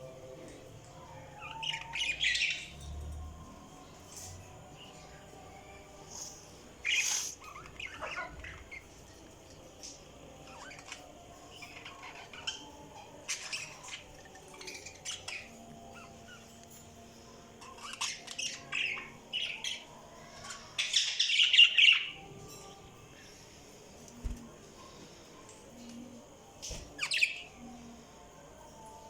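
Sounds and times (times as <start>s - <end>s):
budgies chirping and chattering: 1.4s - 2.9s, 6.8s - 9.1s, 9.8s - 16.5s, 17.6s - 22.6s.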